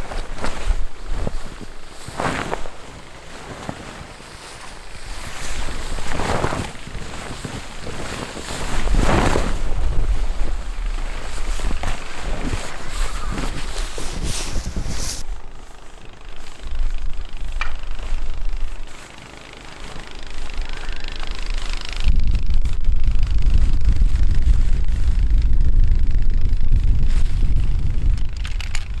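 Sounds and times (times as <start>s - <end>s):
wind buffeting microphone: 4.7s - 19.0s, 20.1s - 29.0s
heavy low rumble: 20.3s - 29.0s.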